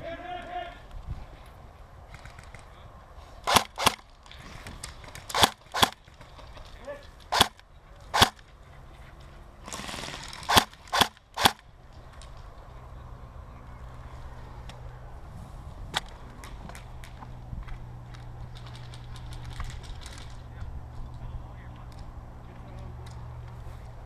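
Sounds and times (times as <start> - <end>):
airsoft gun shots: 3.4 - 4.0, 5.3 - 6.0, 7.3 - 8.4, 9.7 - 11.6.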